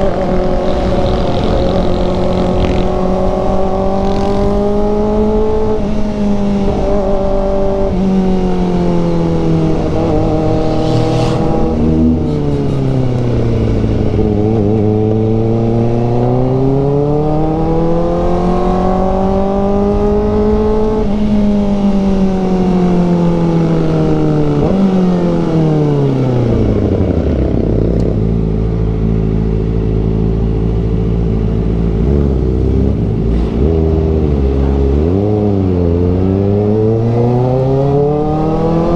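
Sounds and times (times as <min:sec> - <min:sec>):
wind noise: 0:00.0 - 0:29.8
motorcycle engine revving: 0:00.0 - 0:38.9.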